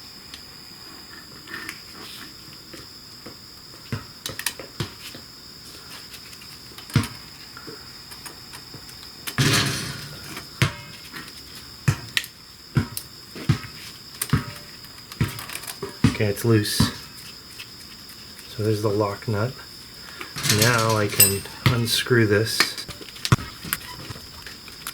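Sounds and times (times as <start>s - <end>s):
scraping metal rattle: 9.4s - 10.4s, 20.4s - 21.6s
metal clicks and knocks: 20.4s - 21.5s.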